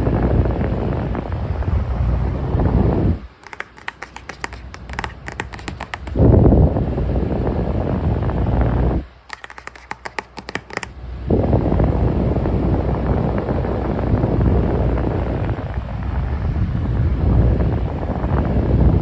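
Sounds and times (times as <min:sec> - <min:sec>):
fan blowing air: 0:00.0 - 0:19.0
rapid light clicking: 0:03.4 - 0:06.2, 0:09.3 - 0:11.0.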